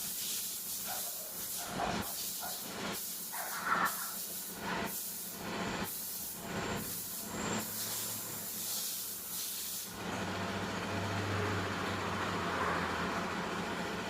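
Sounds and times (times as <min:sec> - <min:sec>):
compressed air hissing: 0:00.0 - 0:09.9.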